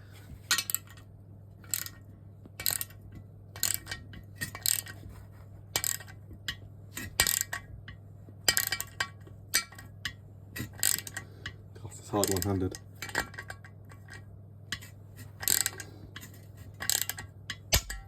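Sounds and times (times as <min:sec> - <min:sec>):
low steady hum: 0:00.0 - 0:18.0
wrench metallic clicks and clinks: 0:01.7 - 0:02.0, 0:02.6 - 0:03.0, 0:03.6 - 0:05.0, 0:10.6 - 0:11.2, 0:14.8 - 0:18.0.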